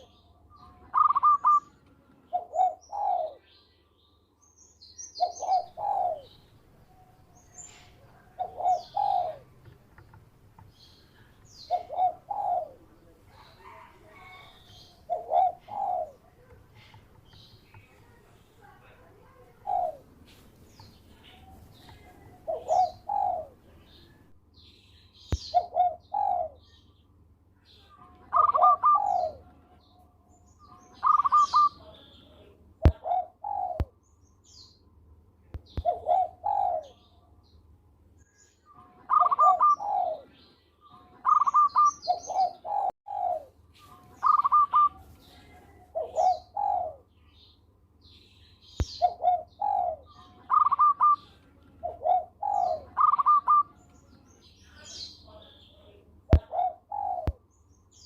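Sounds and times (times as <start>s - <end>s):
small birds chirping faintly: 0.0s - 58.0s
dove cooing: 0.8s - 3.4s, 5.2s - 9.7s, 11.6s - 17.1s, 18.0s - 20.1s, 21.3s - 23.7s, 25.4s - 26.8s, 28.3s - 29.6s, 30.9s - 31.9s, 32.8s - 34.0s, 35.7s - 37.1s, 39.1s - 40.4s, 41.2s - 47.1s, 48.9s - 53.8s, 56.3s - 57.4s.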